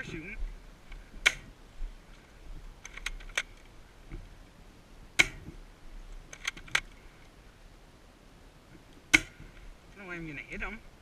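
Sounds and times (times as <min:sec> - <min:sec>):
airsoft gun shots clicking: 0:05.2 - 0:05.5.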